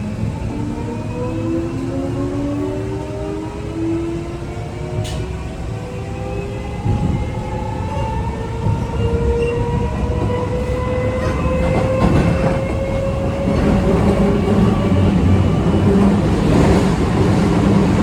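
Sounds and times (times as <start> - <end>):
rail-joint clacks: 5.0 - 5.4, 11.1 - 18.0
wheel-on-rail rumble: 8.5 - 18.0.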